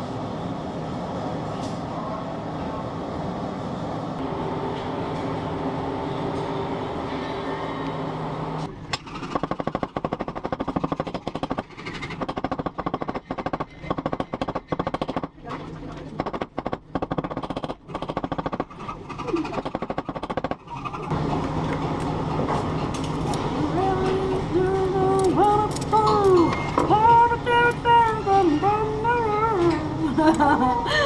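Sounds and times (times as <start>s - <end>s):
rapid mechanical rattling: 8.7s - 23.4s.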